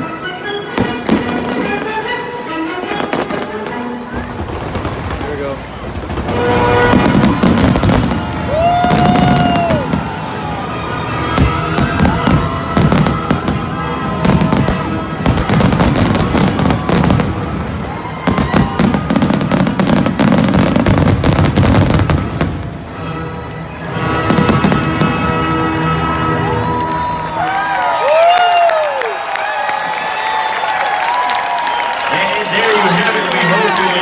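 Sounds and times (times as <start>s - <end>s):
music playing: 0.0s - 5.0s, 6.2s - 27.8s
fireworks bangs and crackles: 0.7s - 2.2s, 3.0s - 27.2s.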